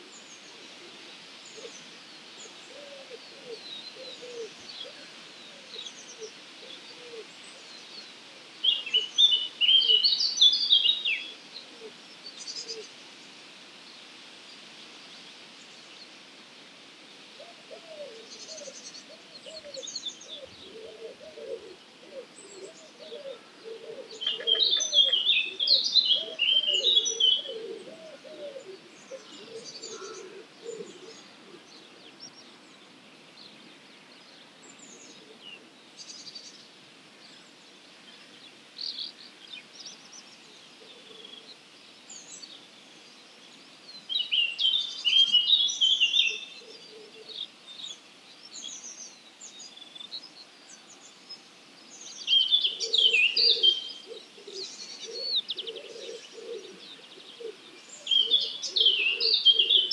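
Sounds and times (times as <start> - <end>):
bird cooing: 2.6 - 7.4, 17.4 - 31.9, 40.8 - 41.4, 44.6 - 47.5, 52.3 - 59.9
birds twittering: 18.5 - 32.8, 37.4 - 59.9.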